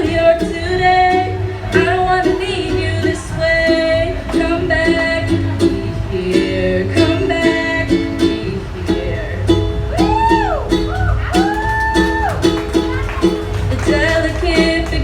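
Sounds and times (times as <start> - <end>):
woman singing slow pop song: 0.0 - 9.4, 13.8 - 15.0
strummed plucked strings: 0.0 - 15.0.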